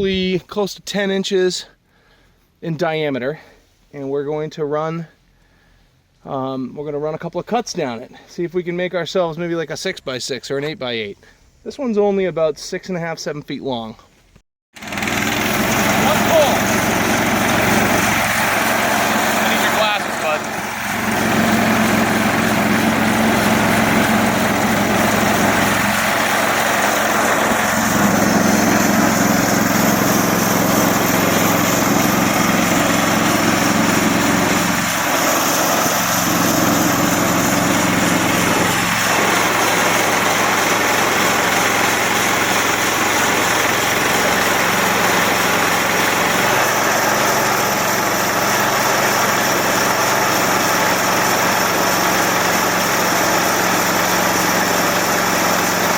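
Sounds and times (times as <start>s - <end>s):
sawmill gasoline engine running: 14.8s - 55.9s.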